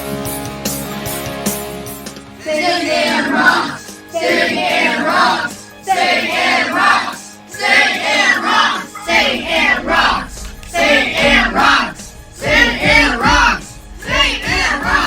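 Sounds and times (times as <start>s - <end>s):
children's voices in unison: 2.4s - 15.0s
low rumble: 8.9s - 15.0s.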